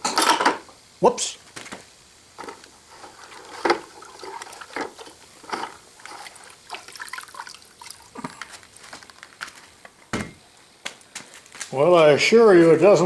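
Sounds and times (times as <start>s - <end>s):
water splashing and dripping: 2.9s - 9.3s.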